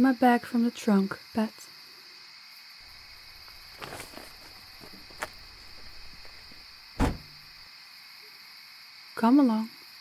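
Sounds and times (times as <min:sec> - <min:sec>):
crickets chirping: 0:00.0 - 0:10.0
rustling: 0:02.8 - 0:07.6
trunk lid slammed shut: 0:04.8 - 0:07.5
trunk latch click: 0:05.8 - 0:07.4.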